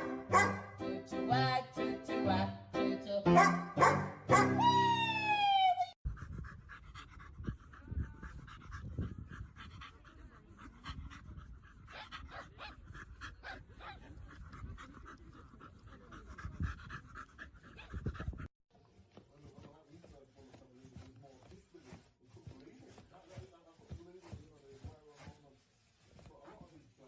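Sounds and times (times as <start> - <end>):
dog panting rapidly: 6.0 - 27.0.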